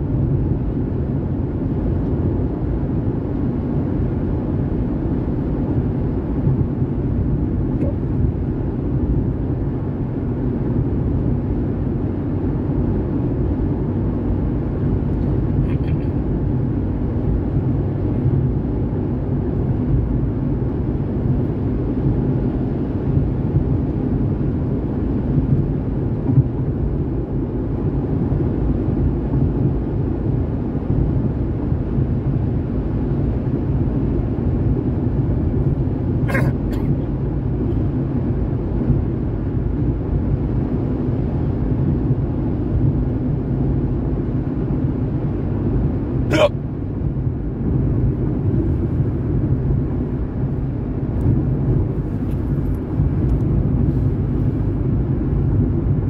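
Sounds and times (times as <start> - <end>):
car interior rumble: 0.0 - 56.0
short sharp hiccup: 36.2 - 37.0, 46.3 - 46.6.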